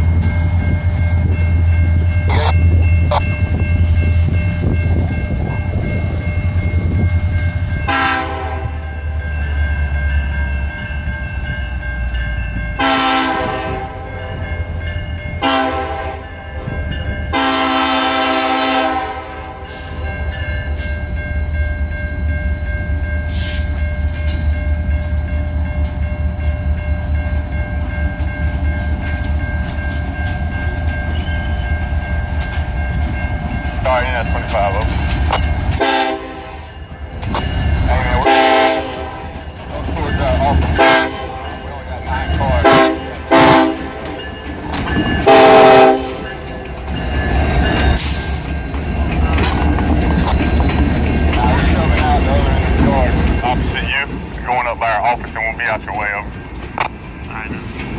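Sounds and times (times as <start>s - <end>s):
freight train rumbling past: 0.0s - 57.9s
locomotive air horn blasts: 7.9s - 8.8s, 12.8s - 14.3s, 15.4s - 16.2s, 17.3s - 19.9s, 35.7s - 36.7s, 38.2s - 39.4s, 40.7s - 41.5s, 42.6s - 44.0s, 45.2s - 46.3s
wheel clatter on rails: 41.5s - 45.3s, 46.0s - 55.3s.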